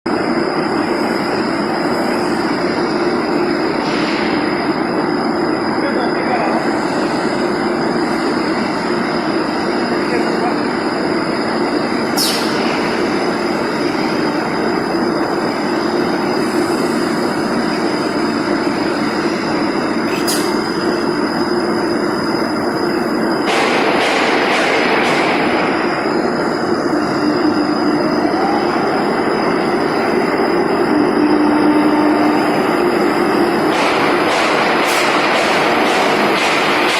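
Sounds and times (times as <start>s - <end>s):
shot blasting machine running: 0.1s - 36.9s
hiss: 12.0s - 21.0s, 31.2s - 36.9s.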